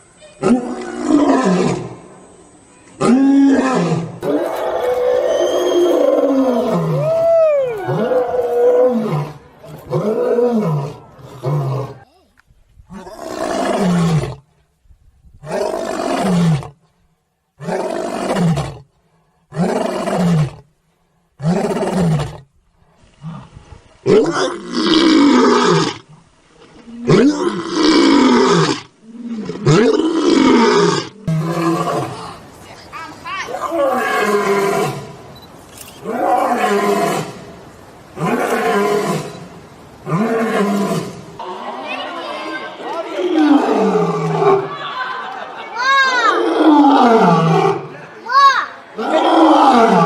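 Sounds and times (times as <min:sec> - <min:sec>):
lion roaring and grunting: 0:46.3 - 0:47.9, 0:49.0 - 0:50.0.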